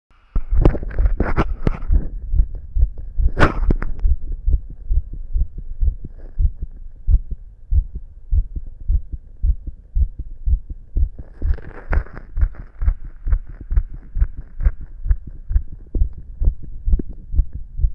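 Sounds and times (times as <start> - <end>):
fast heartbeat thumps: 0.4 - 17.9
sharp knock: 3.3 - 4.0.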